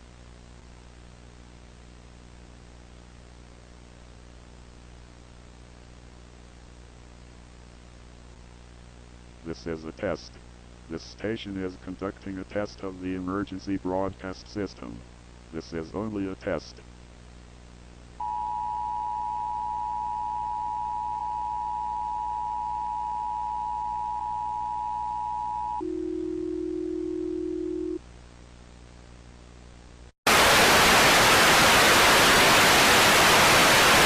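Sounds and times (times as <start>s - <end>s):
loud static hiss: 0.0s - 18.4s, 28.0s - 34.0s
two-tone attention beep: 18.2s - 25.8s
low steady tone: 18.2s - 28.0s.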